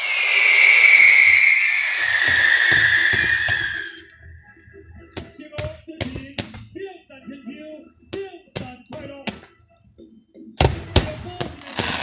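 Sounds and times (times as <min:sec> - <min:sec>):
firework whistle: 0:00.0 - 0:04.4.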